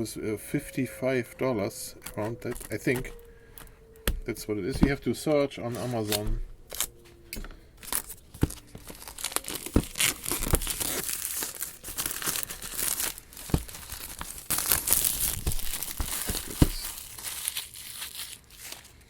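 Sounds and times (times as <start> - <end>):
packaging crinkling and tearing: 1.7 - 19.0
box knocks: 2.1 - 5.2, 6.1 - 11.1, 12.8 - 17.0.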